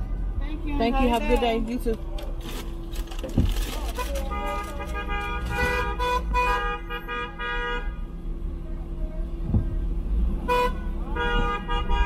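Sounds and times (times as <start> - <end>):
low vehicle rumble: 0.0 - 12.0
car horn honking short toots: 4.0 - 8.0.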